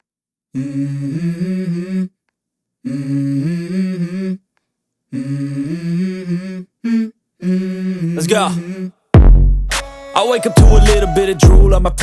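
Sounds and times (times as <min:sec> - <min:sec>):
person humming a melody: 0:10.2 - 0:12.0.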